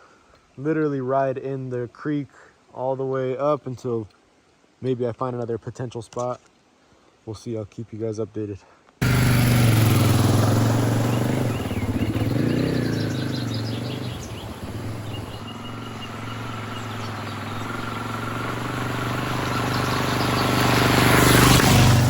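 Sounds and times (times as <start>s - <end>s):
motorcycle engine running: 9.0s - 22.0s.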